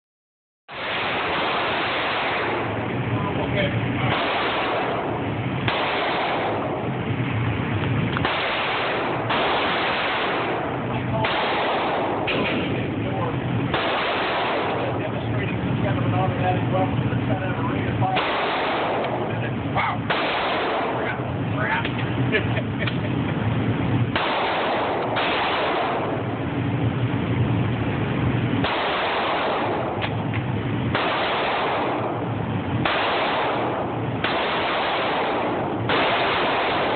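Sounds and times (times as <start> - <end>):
pistol shots: 0.7 - 2.8, 3.6 - 7.0, 8.1 - 12.9, 13.7 - 15.1, 18.0 - 22.0, 24.1 - 26.4, 28.6 - 36.9.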